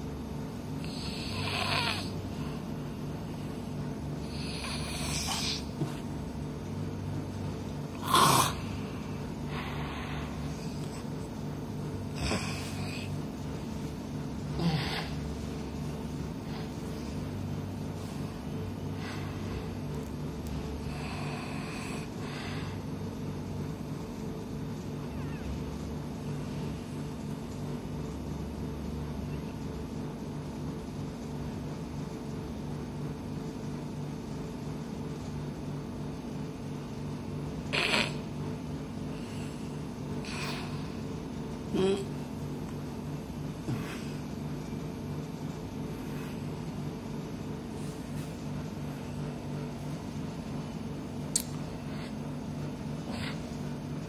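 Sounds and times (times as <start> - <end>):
person snoring heavily: 0.8 - 2.2, 4.2 - 5.8, 7.9 - 8.9, 12.1 - 13.2, 14.5 - 15.4, 20.8 - 22.8, 37.7 - 38.3.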